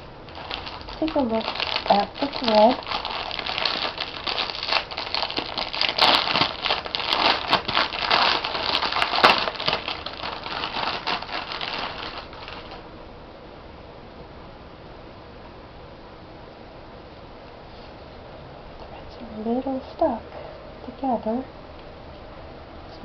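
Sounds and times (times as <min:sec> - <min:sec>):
plastic packaging crinkling: 0:00.0 - 0:12.8.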